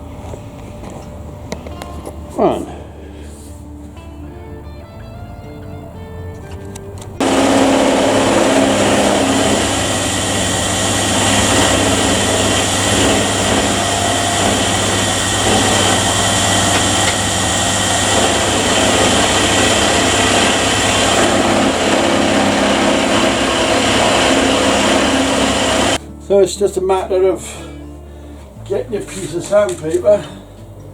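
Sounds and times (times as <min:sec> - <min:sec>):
power tool whining: 0:07.2 - 0:26.0.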